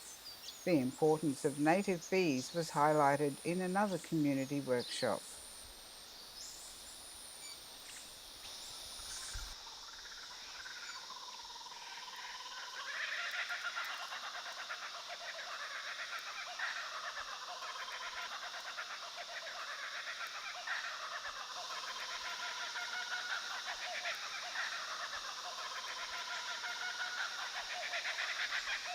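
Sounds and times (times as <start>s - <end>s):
insects hissing: 0.0s - 28.9s.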